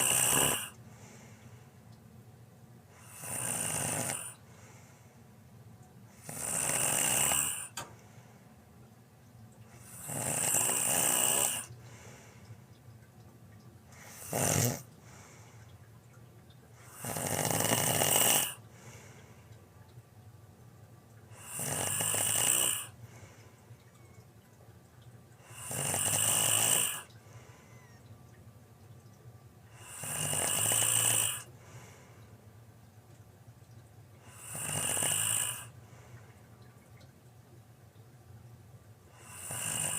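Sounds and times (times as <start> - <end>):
loud rasping snores: 0.0 - 0.7, 3.0 - 4.4, 6.2 - 7.8, 9.8 - 11.7, 14.0 - 14.9, 16.8 - 18.6, 21.4 - 23.0, 25.4 - 27.1, 29.8 - 31.5, 34.3 - 35.8, 39.1 - 39.9
sharp snort: 14.0 - 14.8.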